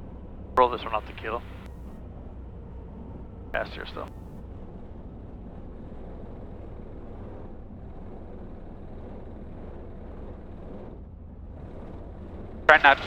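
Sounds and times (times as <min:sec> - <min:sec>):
aircraft cabin engine rumble: 0:00.6 - 0:01.7, 0:03.6 - 0:10.6, 0:12.7 - 0:13.0.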